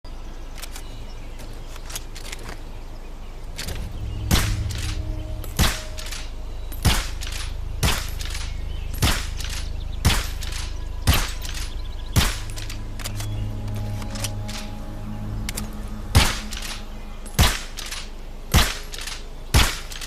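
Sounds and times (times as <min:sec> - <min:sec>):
steady low hum: 0:03.1 - 0:20.0
pistol gunshots: 0:09.0 - 0:12.6, 0:18.5 - 0:20.0.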